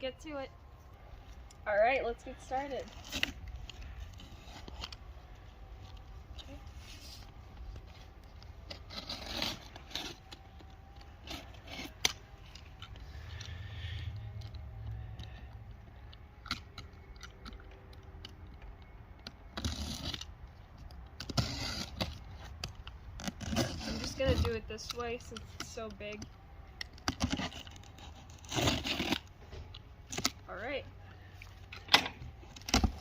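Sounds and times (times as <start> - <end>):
cardboard scraping and tearing: 2.5 - 5.1, 5.8 - 13.4, 19.4 - 20.3, 21.2 - 25.9, 26.9 - 29.4.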